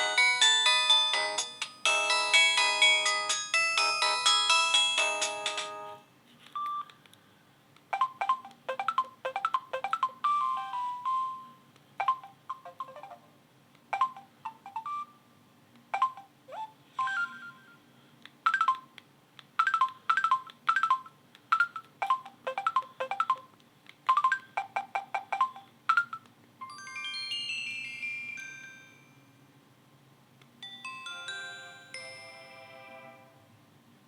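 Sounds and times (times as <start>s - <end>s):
mobile phone alert tones: 8.0s - 13.3s, 13.9s - 15.2s, 16.0s - 17.8s, 18.5s - 18.9s, 19.6s - 23.5s
bright ringing chime tone: 26.6s - 29.4s.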